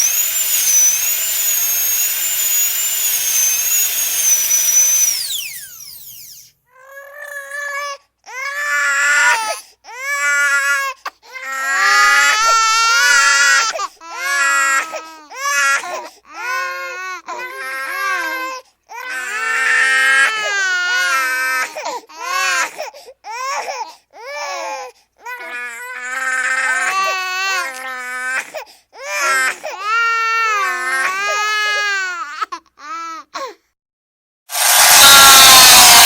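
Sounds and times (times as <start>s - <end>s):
baby crying: 6.7s - 33.6s, 34.6s - 36.0s.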